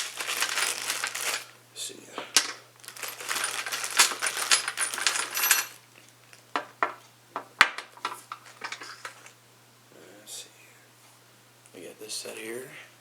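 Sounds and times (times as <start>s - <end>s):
steel bits rattling and clinking: 0.0s - 1.5s, 2.2s - 9.4s.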